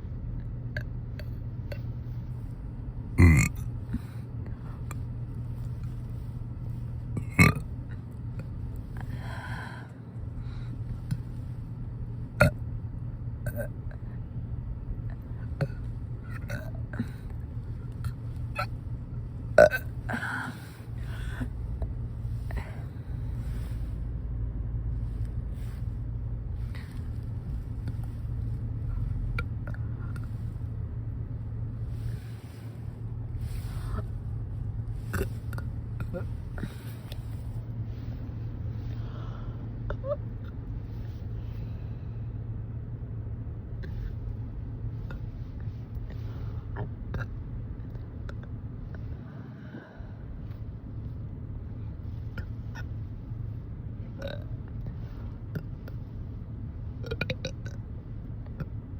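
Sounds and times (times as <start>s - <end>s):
steady low hum: 0.0s - 58.9s
woman burping: 3.2s - 3.7s, 7.2s - 7.7s, 15.6s - 17.2s, 19.6s - 20.6s, 54.2s - 54.5s, 57.0s - 57.8s.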